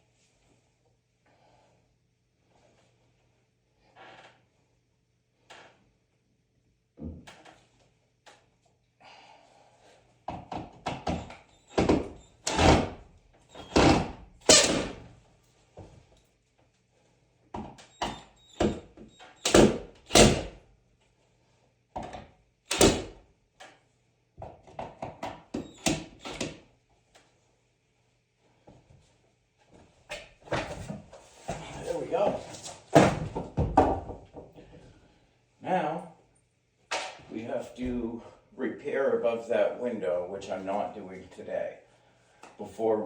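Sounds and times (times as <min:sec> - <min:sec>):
knocks and thuds on a wall: 0:10.3 - 0:13.0, 0:17.5 - 0:20.6, 0:30.5 - 0:34.8.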